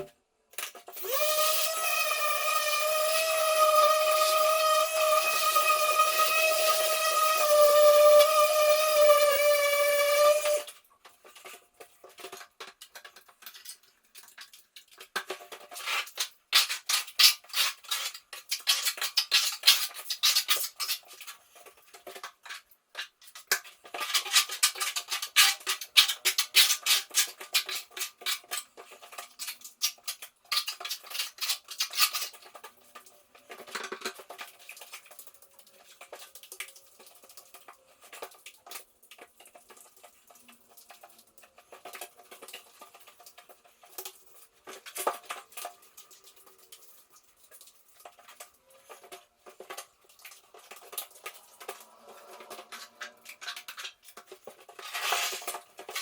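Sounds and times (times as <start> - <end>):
metal spatula scraping plaster: 2.4 - 32.8, 50.6 - 56.0.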